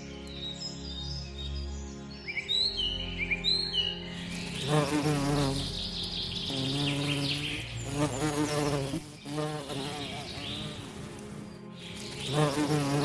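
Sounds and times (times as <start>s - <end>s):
flying insect buzzing: 4.3s - 13.0s.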